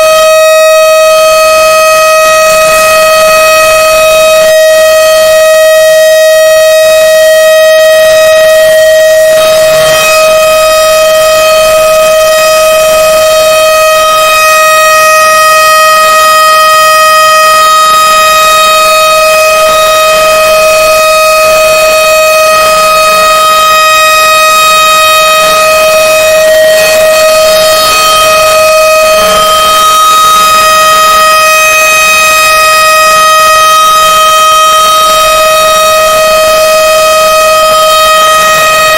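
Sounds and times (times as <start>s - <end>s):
alarm tone: 0.0s - 38.9s.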